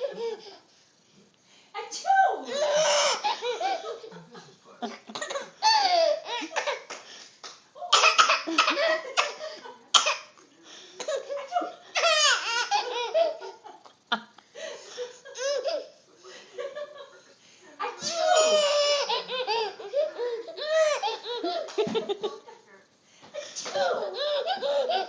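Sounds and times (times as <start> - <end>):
baby laughing: 2.5 - 4.1, 5.2 - 6.9, 11.0 - 13.6, 18.0 - 21.9, 23.7 - 25.0.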